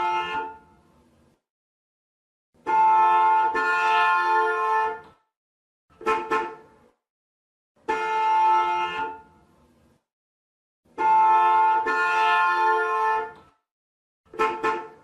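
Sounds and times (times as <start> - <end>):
car horn honking: 0.0 - 0.7, 2.6 - 5.1, 6.0 - 6.8, 7.8 - 9.4, 10.9 - 13.5, 14.3 - 15.0.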